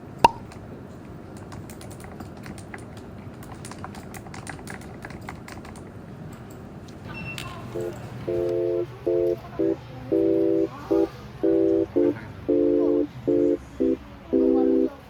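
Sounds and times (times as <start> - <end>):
electronic buzzer beeps: 7.8 - 14.9.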